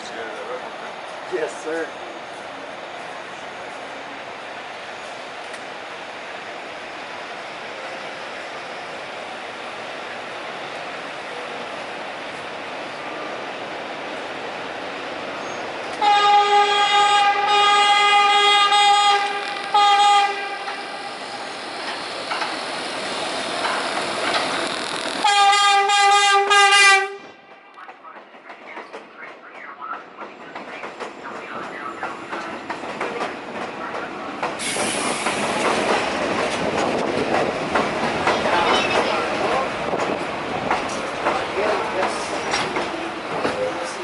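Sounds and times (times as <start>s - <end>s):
train rumbling on track: 0.0s - 44.0s
train horn blasts: 16.0s - 21.0s, 25.2s - 27.5s.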